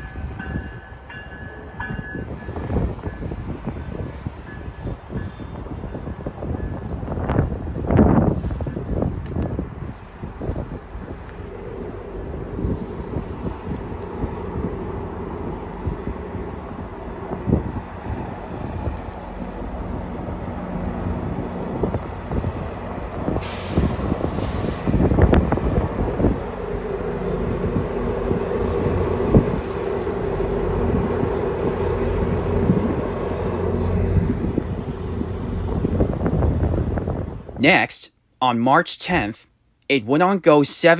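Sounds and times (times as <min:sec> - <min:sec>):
air hiss burst: 0:23.4 - 0:25.0.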